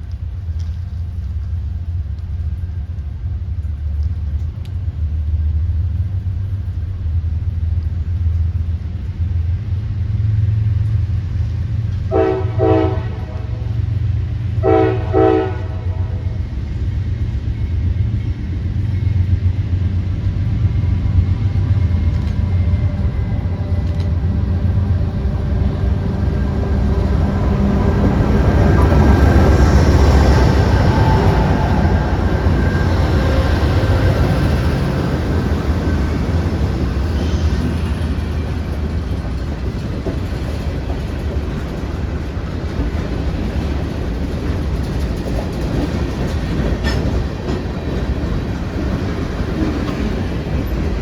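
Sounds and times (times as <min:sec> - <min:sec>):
diesel locomotive rumbling: 0:00.0 - 0:51.0
train air horn blasts: 0:12.1 - 0:13.8, 0:14.6 - 0:16.3, 0:26.3 - 0:34.6.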